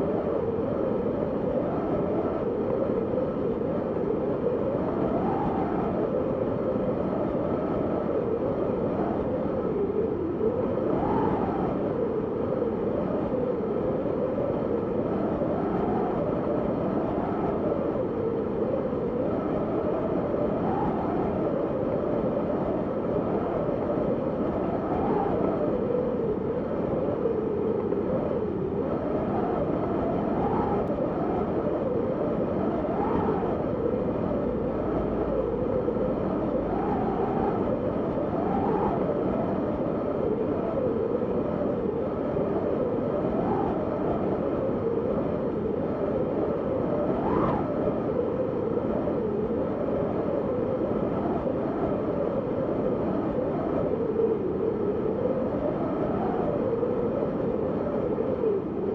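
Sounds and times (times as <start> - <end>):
snowstorm wind whistling: 0.0 - 58.9.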